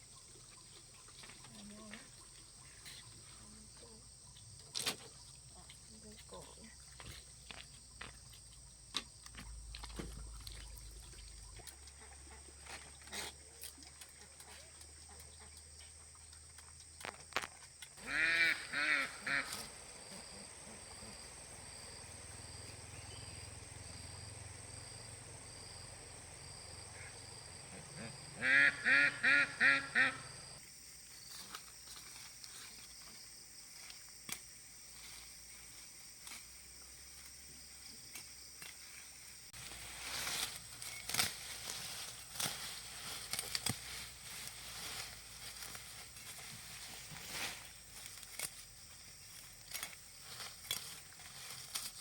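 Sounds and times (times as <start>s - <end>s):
duck quacking: 18.0s - 19.8s, 26.9s - 30.4s.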